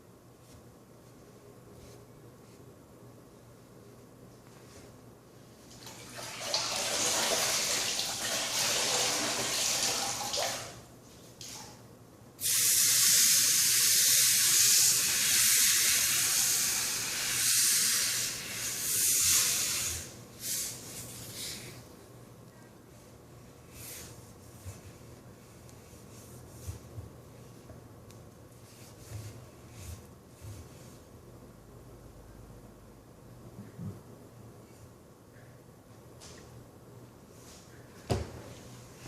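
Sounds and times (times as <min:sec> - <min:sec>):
gas torch flame hissing: 0:12.4 - 0:20.8.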